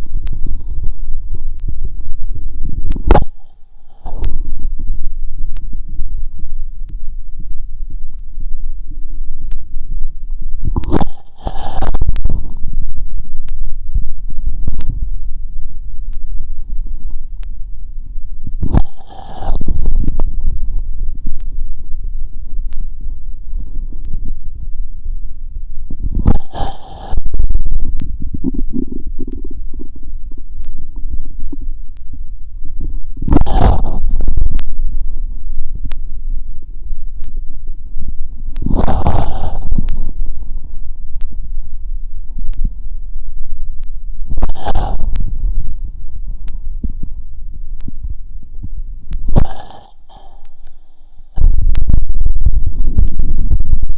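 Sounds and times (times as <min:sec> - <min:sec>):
constant low rumble: 0:00.0 - 0:53.9
heartbeat through stethoscope: 0:09.2 - 0:36.1, 0:38.5 - 0:53.9
bowel gurgles through stethoscope: 0:26.1 - 0:30.4, 0:33.3 - 0:34.3, 0:38.6 - 0:40.2, 0:49.4 - 0:50.8.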